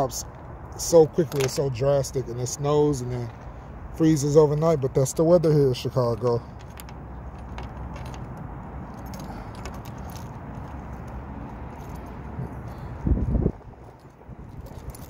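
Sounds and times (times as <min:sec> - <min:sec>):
key ring jangling: 0:07.4 - 0:13.0.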